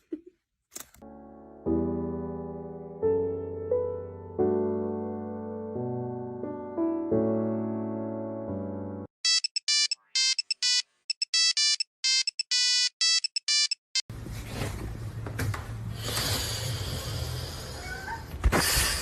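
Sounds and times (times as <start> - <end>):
piano music: 1.0 - 9.1
phone ringtone beeping: 9.2 - 14.0.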